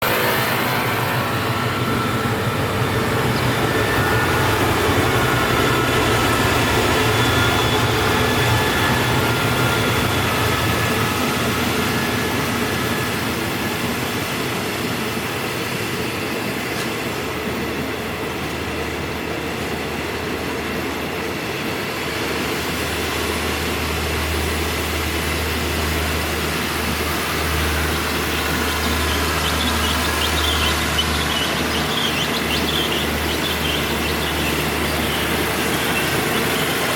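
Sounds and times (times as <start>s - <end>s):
train rumbling on rails: 0.0s - 36.9s
low drone: 24.9s - 36.9s
wheel squeal: 27.1s - 36.9s.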